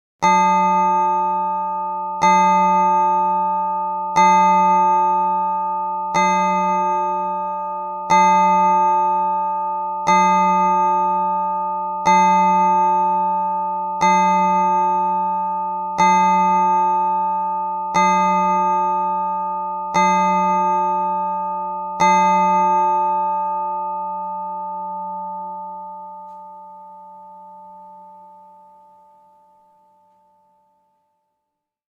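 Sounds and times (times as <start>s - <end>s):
clock bell striking: 0.2s - 30.6s.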